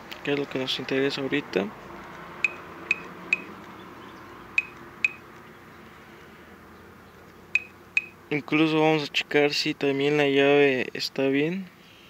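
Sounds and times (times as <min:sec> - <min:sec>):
button clicks: 0:02.4 - 0:03.5, 0:04.6 - 0:05.2, 0:07.6 - 0:08.2
short high beeps: 0:02.4 - 0:03.5, 0:04.6 - 0:05.2, 0:07.6 - 0:08.2.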